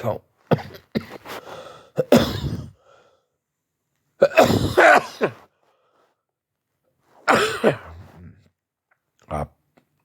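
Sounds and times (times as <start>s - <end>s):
person clearing throat: 0.5s - 1.3s, 2.0s - 2.8s, 4.2s - 5.5s, 7.3s - 8.4s.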